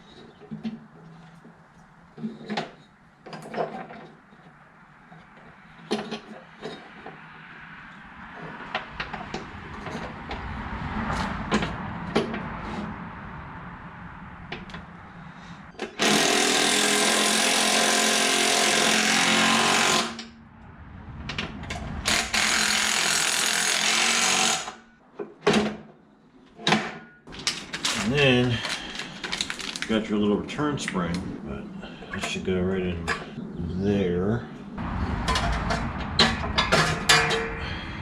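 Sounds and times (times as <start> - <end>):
power tool running: 15.9 - 20.3, 22.1 - 24.8.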